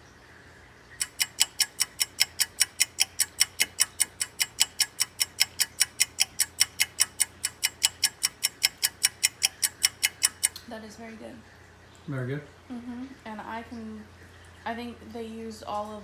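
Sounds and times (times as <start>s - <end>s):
clock ticking rapidly: 1.0s - 10.7s.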